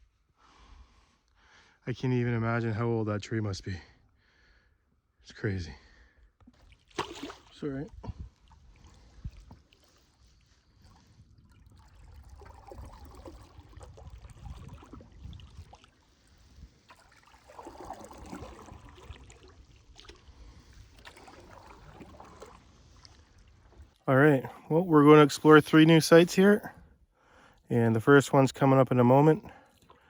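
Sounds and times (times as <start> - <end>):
water trickling: 11.4 - 24.0
paddle strokes swishing: 12.3 - 24.0.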